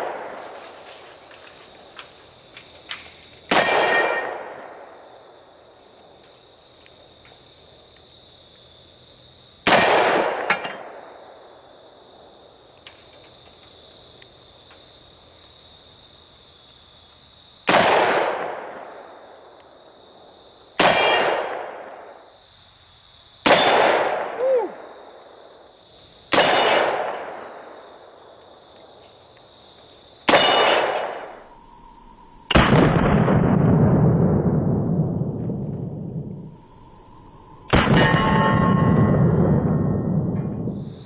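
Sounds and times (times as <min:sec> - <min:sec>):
revolver gunshots: 0:09.7 - 0:11.0, 0:17.7 - 0:18.7, 0:20.8 - 0:21.9, 0:23.5 - 0:24.4, 0:32.5 - 0:35.9, 0:37.7 - 0:40.4
steel target clanging: 0:37.8 - 0:39.2.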